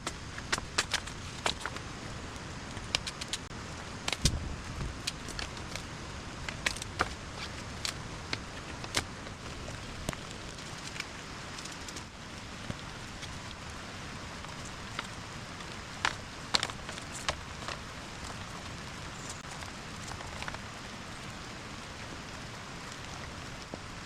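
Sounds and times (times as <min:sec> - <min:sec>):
sharp clicks and snaps: 0:00.0 - 0:01.8, 0:02.7 - 0:12.1
heavy rain hiss: 0:00.0 - 0:24.0.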